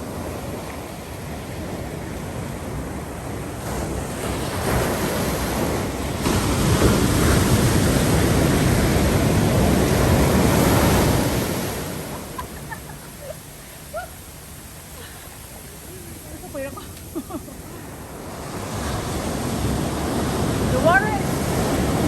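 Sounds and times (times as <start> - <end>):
ocean wave breaking: 0.0 - 22.0.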